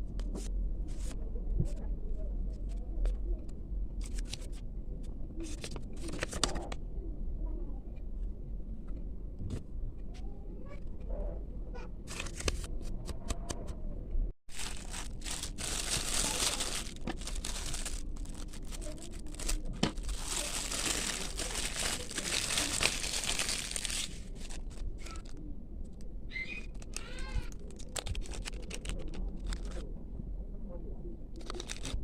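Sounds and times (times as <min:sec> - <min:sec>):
packaging crinkling: 0:14.5 - 0:25.3, 0:26.6 - 0:29.8, 0:31.4 - 0:32.0
squeaky chirp: 0:26.3 - 0:26.8.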